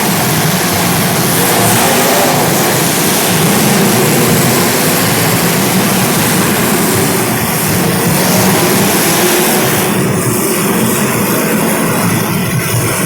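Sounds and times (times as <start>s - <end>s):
race car engines droning: 0.0s - 13.0s.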